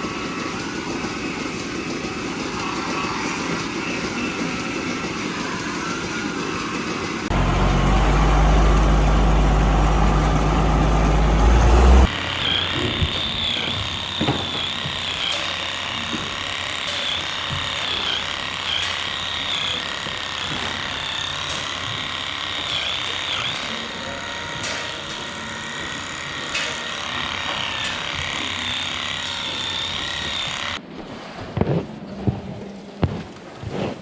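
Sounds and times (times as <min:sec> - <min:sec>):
machinery clattering: 0:07.2 - 0:12.1.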